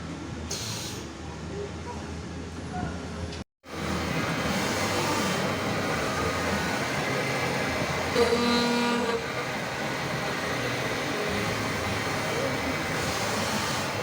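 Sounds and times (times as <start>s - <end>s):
milling machine cutting steel: 3.7s - 14.0s.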